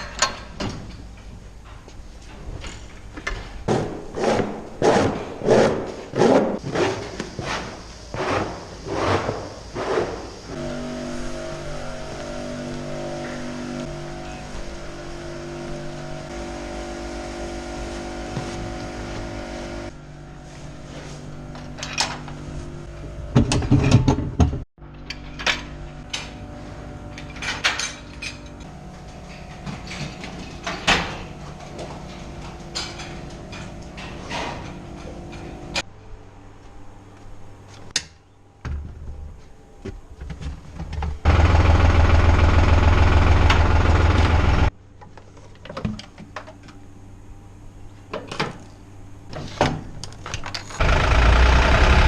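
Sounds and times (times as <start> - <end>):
metal clanks and knocks: 23.3 - 26.4, 27.2 - 35.8
tractor engine running: 41.2 - 44.7, 50.8 - 52.0.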